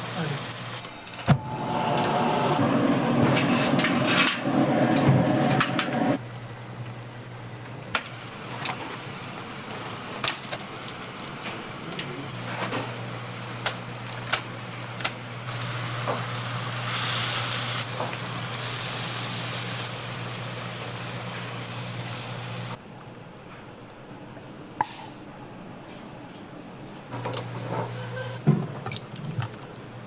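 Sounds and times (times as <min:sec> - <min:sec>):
machine hum: 0:00.4 - 0:17.0.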